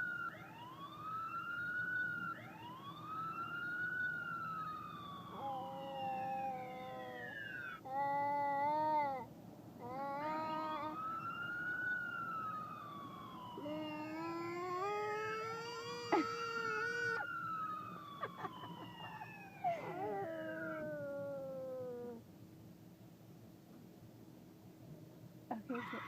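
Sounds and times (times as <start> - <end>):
toy siren-like sliding tones: 5.2 - 7.8.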